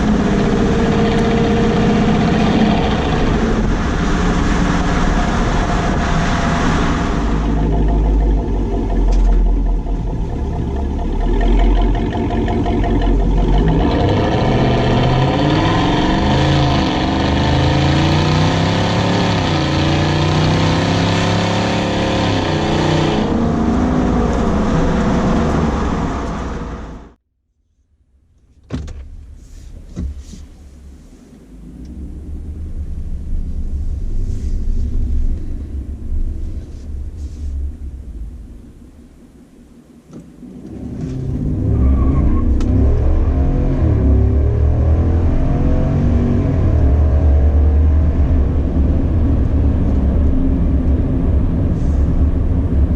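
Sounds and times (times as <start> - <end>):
v eight engine revving: 0.0 - 27.2, 40.4 - 52.9.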